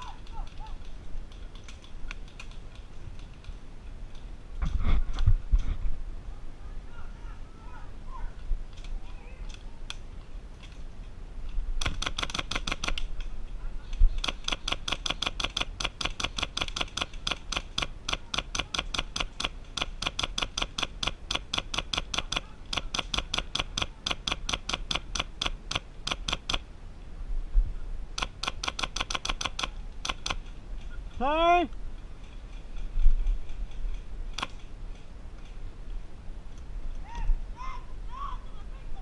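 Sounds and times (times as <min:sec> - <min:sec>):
airsoft gun rapid shots: 0:11.8 - 0:13.0, 0:14.2 - 0:26.6, 0:28.2 - 0:30.4.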